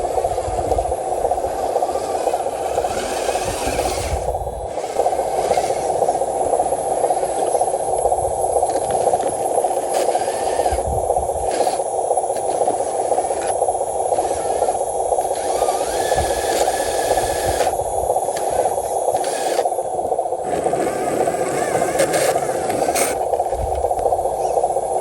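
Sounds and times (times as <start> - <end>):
small electric motor and gearbox: 0.0 - 19.8, 20.4 - 25.0.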